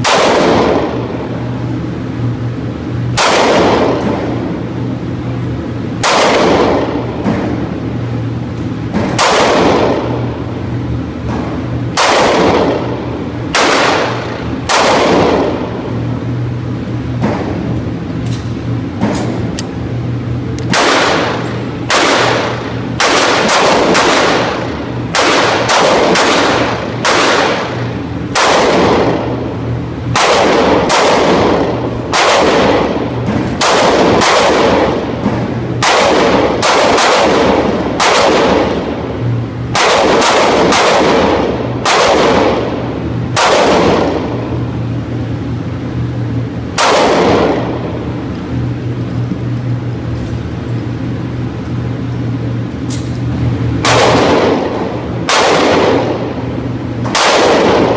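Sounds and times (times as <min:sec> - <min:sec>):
pistol shots with echo: 0:00.0 - 0:01.4, 0:03.1 - 0:04.8, 0:06.0 - 0:07.8, 0:08.9 - 0:10.3, 0:11.3 - 0:16.1, 0:20.7 - 0:29.5, 0:30.1 - 0:44.6, 0:46.7 - 0:48.2, 0:53.8 - 0:57.9.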